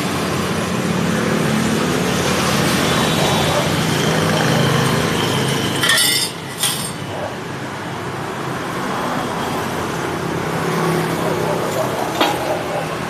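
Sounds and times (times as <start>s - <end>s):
sharp metallic clinks: 5.3s - 7.1s.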